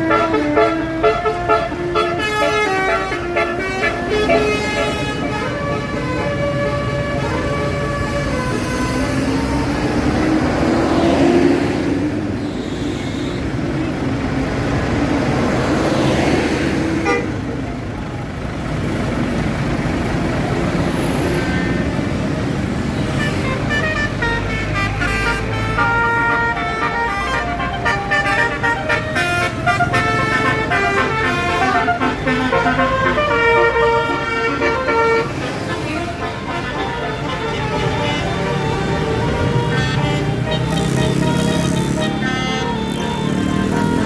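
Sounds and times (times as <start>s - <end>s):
rising and falling horn tone: 0.0s - 12.1s, 23.9s - 44.0s
bus horn playing a tune: 0.0s - 18.1s, 20.0s - 44.0s
bus engine running: 0.0s - 44.0s.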